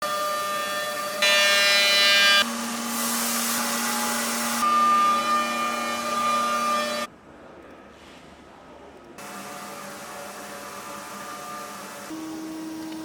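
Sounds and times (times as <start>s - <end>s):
milling machine whine: 0.7s - 7.1s.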